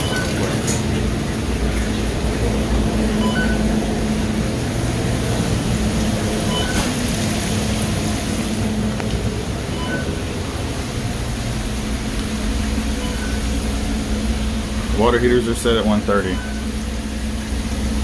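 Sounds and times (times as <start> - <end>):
steady rushing noise with hum: 1.5 - 18.0.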